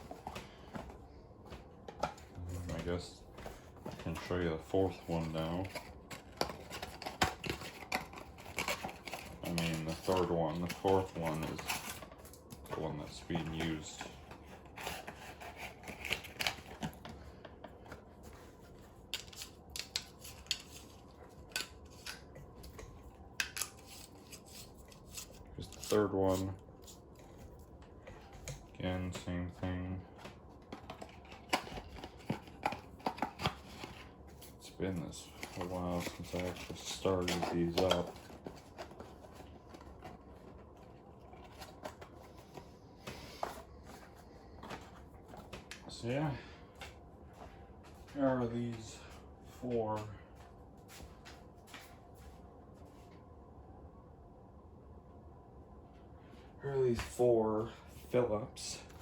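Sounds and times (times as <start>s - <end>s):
packaging rustling: 2.2s - 45.9s.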